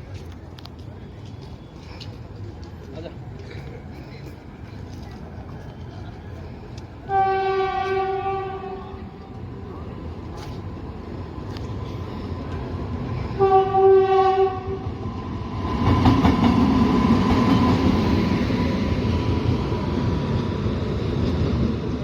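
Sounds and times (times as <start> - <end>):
train rumbling: 0.0 - 22.0
train horn: 7.0 - 9.2, 13.3 - 15.0.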